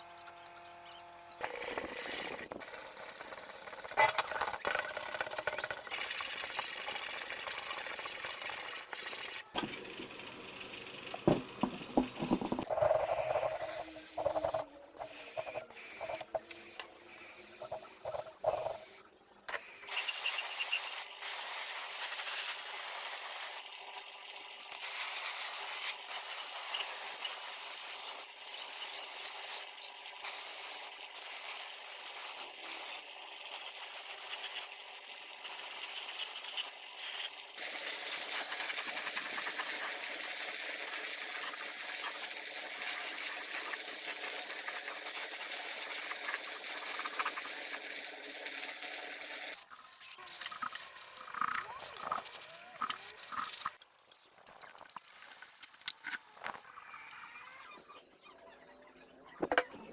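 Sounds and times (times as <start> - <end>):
pressurised spray hissing: 19.6 - 53.8.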